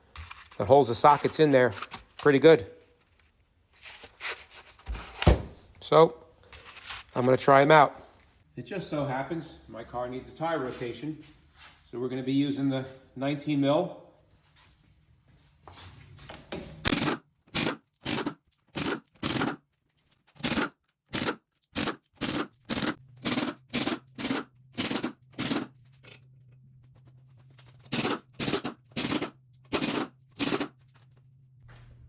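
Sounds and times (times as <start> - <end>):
impact wrench hammering bursts: 16.8 - 19.6, 20.4 - 25.8, 27.9 - 30.7.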